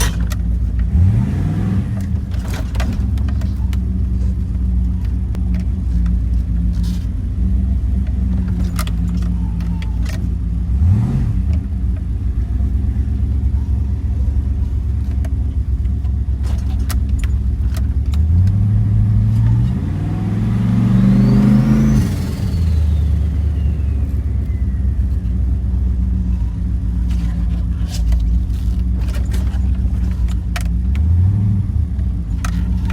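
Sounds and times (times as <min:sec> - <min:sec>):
car engine idling and revving: 0:00.0 - 0:32.9
turbo whistle: 0:22.2 - 0:25.2.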